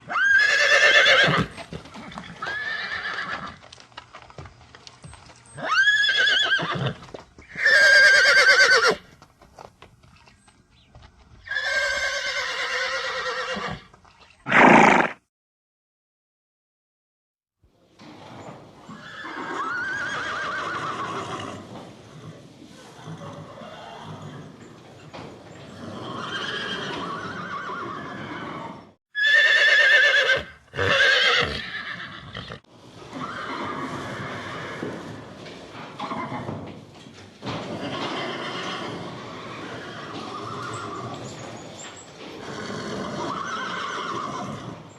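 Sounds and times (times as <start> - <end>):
horse whinnying: 0.0 - 3.6, 5.6 - 9.0, 11.4 - 15.2, 18.8 - 24.7, 25.7 - 35.2, 36.0 - 36.6, 37.6 - 44.9.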